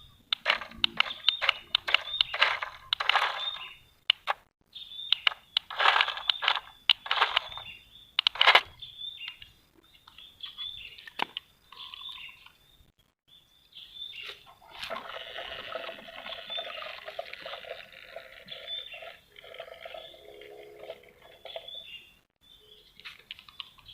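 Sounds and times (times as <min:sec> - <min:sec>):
clicks: 0:00.3 - 0:04.5, 0:05.1 - 0:10.2
sand crunching: 0:00.4 - 0:03.8, 0:05.3 - 0:08.7.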